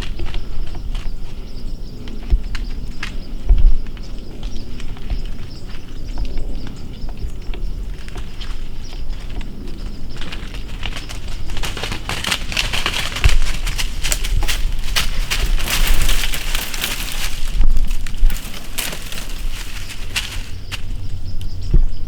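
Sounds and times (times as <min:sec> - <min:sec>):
dry leaves crackling: 0:07.8 - 0:21.2.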